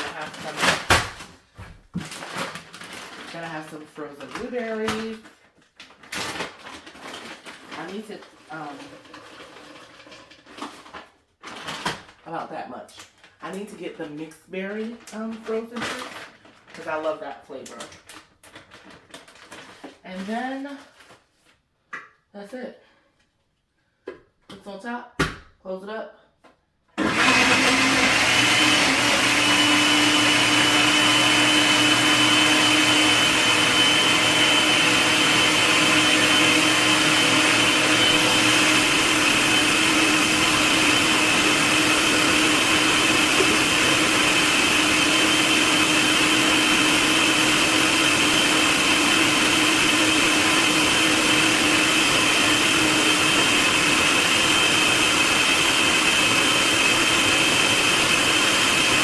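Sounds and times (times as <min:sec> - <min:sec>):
blender motor whine: 0:27.0 - 0:59.0.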